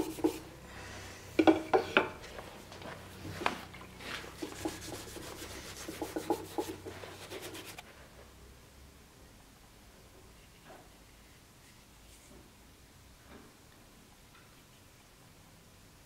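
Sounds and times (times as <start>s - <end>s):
metal rubbed with abrasive: 4.2s - 7.8s.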